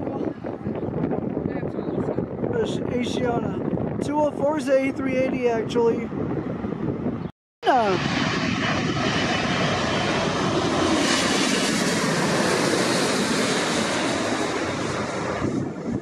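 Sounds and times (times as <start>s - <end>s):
jet airliner passing overhead: 5.6s - 16.0s.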